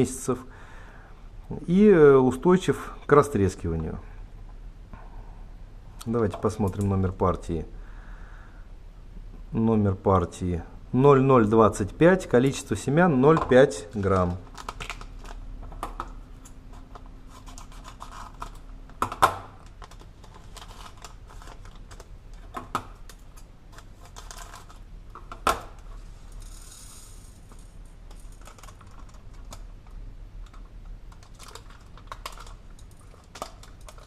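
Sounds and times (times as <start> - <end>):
seed packet rustling: 19.6 - 22.1.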